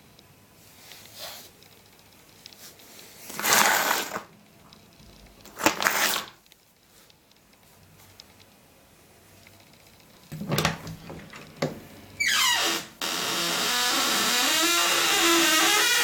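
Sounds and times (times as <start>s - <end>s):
door creaking and scraping: 10.3s - 16.0s.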